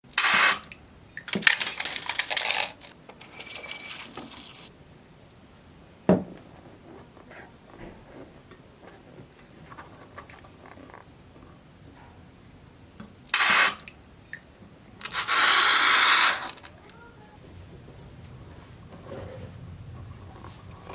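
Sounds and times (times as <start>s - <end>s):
crackling rattling slime noise: 0.1s - 4.7s, 15.0s - 17.0s
faint fiddling sounds: 6.4s - 12.7s, 14.0s - 20.9s.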